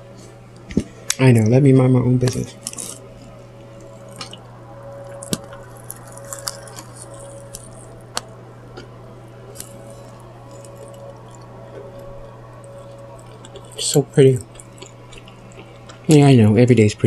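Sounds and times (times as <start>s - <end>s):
low hum: 0.0s - 17.0s
wet mouth eating sounds: 2.5s - 3.3s, 4.0s - 8.9s, 9.5s - 16.2s.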